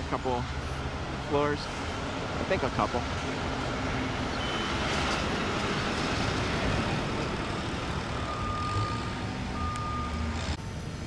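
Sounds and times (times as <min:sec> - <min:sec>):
road traffic rumble: 0:00.0 - 0:11.0
high electronic beep: 0:04.3 - 0:04.9, 0:08.2 - 0:10.2.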